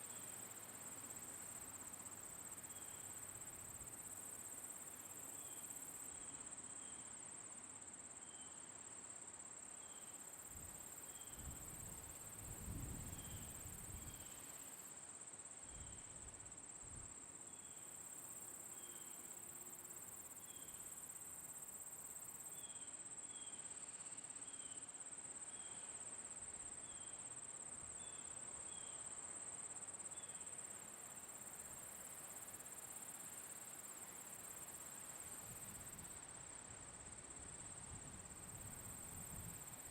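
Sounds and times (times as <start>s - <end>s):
crickets trilling: 9.1s - 15.0s, 17.4s - 39.9s.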